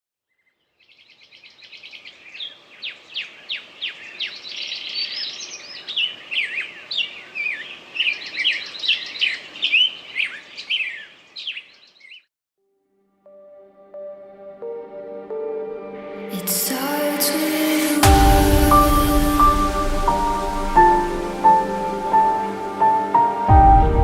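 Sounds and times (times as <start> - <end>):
songbirds singing: 0.3 - 12.3.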